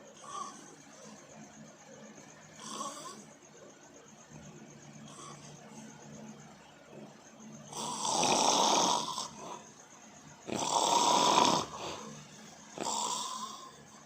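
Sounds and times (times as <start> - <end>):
quiet breathing: 0.0 - 14.0
person snoring loudly: 0.2 - 0.8, 2.6 - 3.3, 7.7 - 9.6, 10.4 - 14.0.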